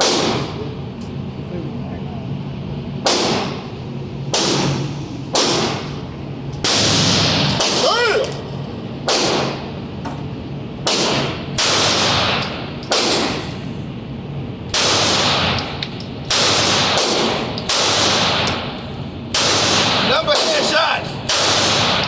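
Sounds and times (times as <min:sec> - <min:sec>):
single gunshots ringing: 0:19.3 - 0:22.0.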